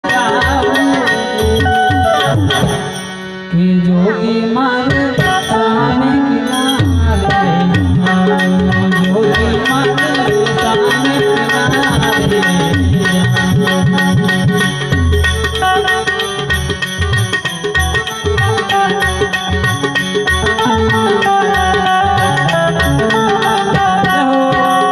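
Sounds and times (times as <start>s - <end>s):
low tabla strokes: 0.0s - 3.5s, 4.8s - 24.9s
harmonium held notes: 0.0s - 24.9s.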